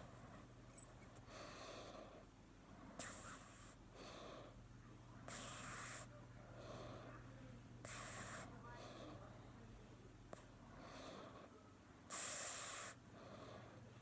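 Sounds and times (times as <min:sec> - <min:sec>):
cat snoring softly: 0:05.3 - 0:07.0, 0:12.1 - 0:13.7.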